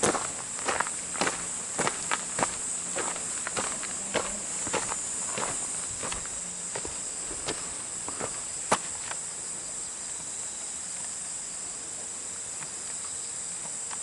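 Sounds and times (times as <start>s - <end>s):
footsteps: 0.0s - 9.2s
insects buzzing: 0.0s - 14.0s.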